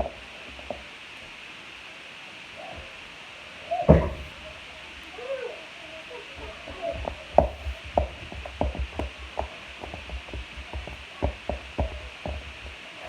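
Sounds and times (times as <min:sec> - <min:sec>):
soft low thuds: 0:03.9 - 0:04.5.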